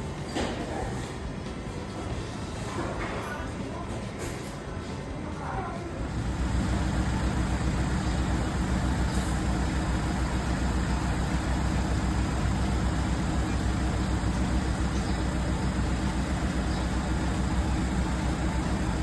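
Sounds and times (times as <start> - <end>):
road and tyre rumble: 6.0 - 19.0.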